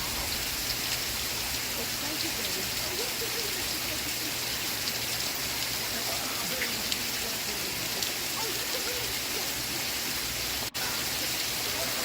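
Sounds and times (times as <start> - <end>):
steady rain: 0.0 - 12.0
muffled television voices: 5.6 - 10.0, 10.7 - 12.0.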